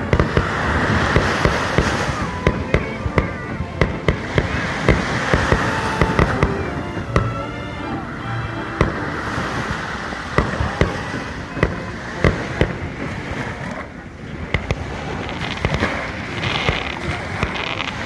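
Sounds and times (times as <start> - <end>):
fireworks crackle: 0.0 - 7.3, 14.4 - 18.0
fireworks booming bursts: 0.0 - 13.3, 14.4 - 18.0.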